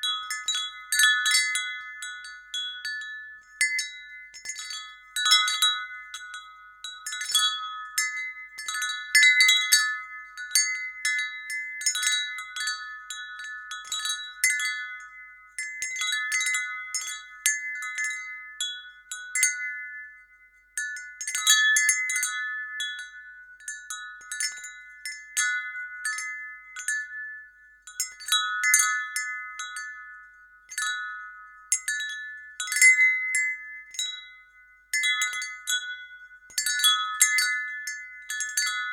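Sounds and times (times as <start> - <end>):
wind chime ringing: 0.0 - 38.9.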